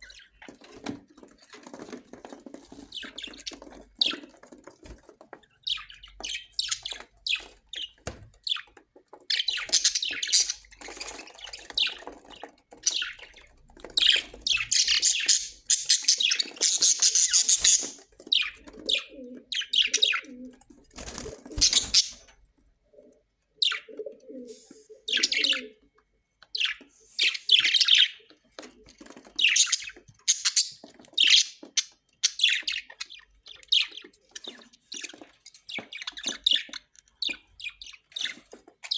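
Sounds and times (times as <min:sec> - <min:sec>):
parrots chirping: 0:09.3 - 0:20.3, 0:21.6 - 0:22.3, 0:29.4 - 0:38.9.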